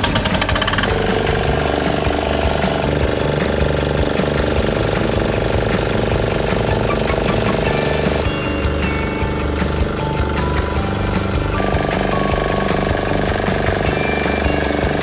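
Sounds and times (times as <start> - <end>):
diesel engine clattering: 0.0 - 15.0.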